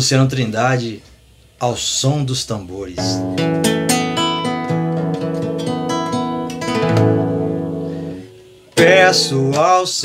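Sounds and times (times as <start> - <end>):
acoustic guitar strumming chords: 3.0 - 10.0.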